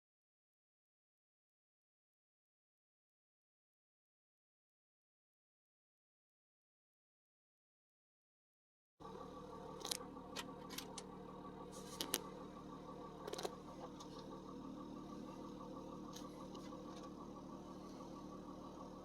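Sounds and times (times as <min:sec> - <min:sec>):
diesel engine idling with clatter: 0:09.0 - 0:19.0.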